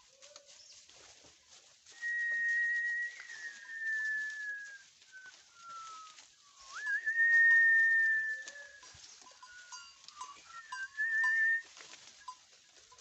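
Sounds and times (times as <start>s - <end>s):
person whistling long notes: 2.0s - 8.8s, 10.2s - 11.7s.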